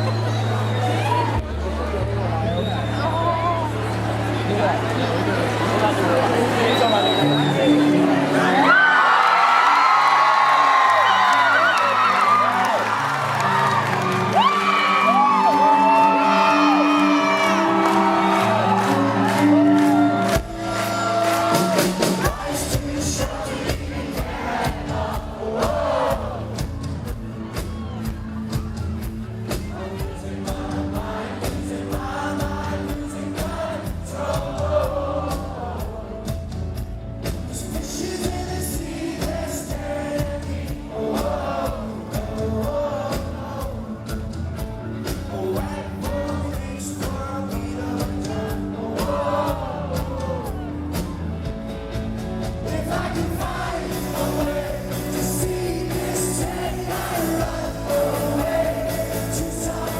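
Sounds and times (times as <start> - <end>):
drums: 0.0 - 59.9
rock band playing live: 11.4 - 59.9
lead vocal singing: 14.2 - 51.2, 52.4 - 59.9.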